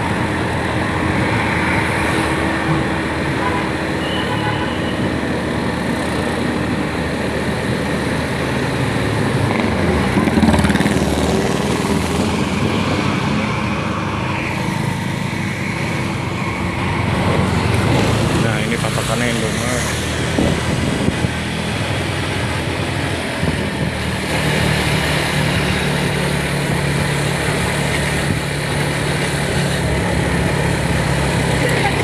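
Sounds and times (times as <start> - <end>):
road noise: 0.0 - 32.0.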